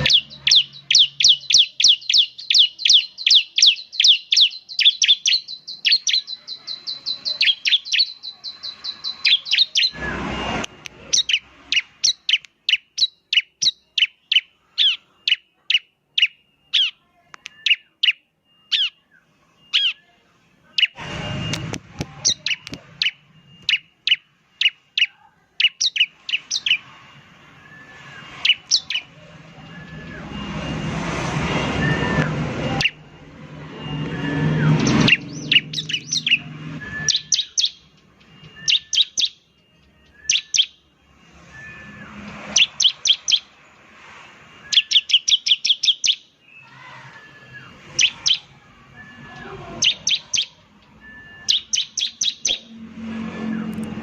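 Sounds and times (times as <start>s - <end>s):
rushing noise: 8.8s - 11.6s, 26.8s - 37.1s.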